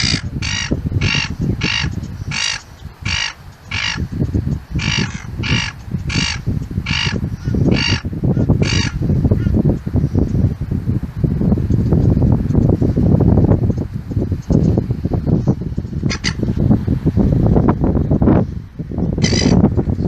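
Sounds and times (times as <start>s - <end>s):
gull calling: 0.0s - 4.0s, 4.8s - 9.5s
wind rumbling on microphone: 0.0s - 20.0s.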